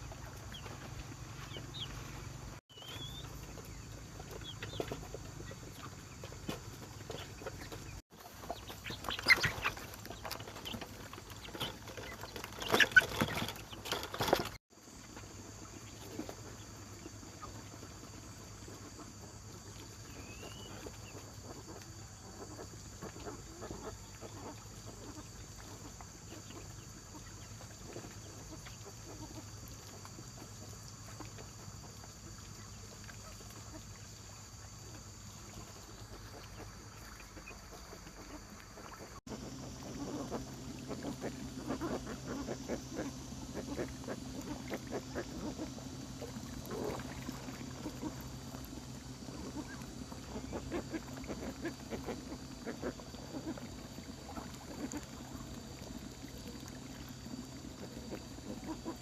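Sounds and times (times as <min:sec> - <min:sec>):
chickens clucking: 0:00.0 - 0:59.0
ducks calling: 0:04.2 - 0:14.6, 0:35.5 - 0:59.0.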